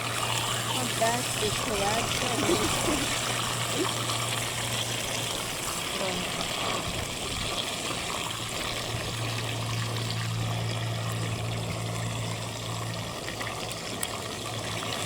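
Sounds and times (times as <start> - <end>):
fish sizzling in oil: 0.0 - 15.0
steady low hum: 0.0 - 15.0.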